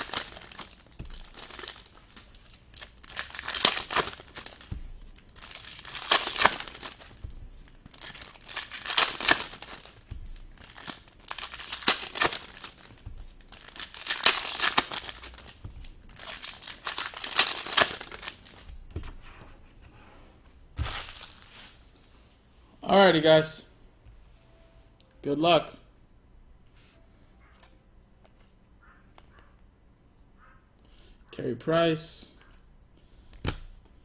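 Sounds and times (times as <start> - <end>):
plastic wrapping crinkling and tearing: 0.0 - 19.2, 20.8 - 21.9.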